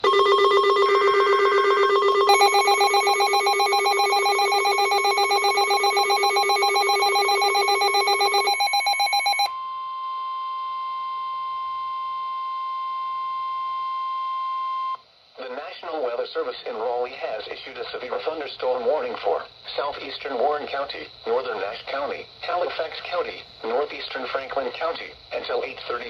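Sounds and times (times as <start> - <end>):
pulsing multi-tone alarm: 0.0 - 9.5
steady single warning tone: 0.0 - 14.9.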